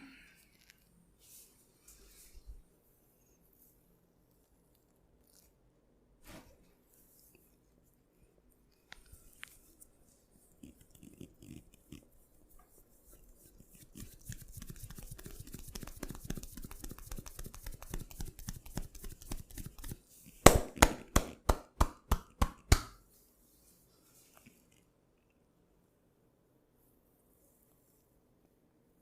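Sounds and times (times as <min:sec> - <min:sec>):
hand strokes on skin: 0:09.0 - 0:20.4
sharp slaps on skin: 0:20.5 - 0:23.0.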